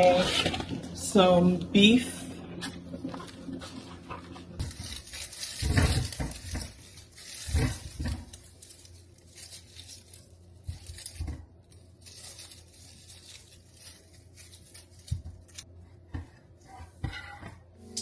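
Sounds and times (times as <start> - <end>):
plastic packaging rustling: 0.0 - 17.0.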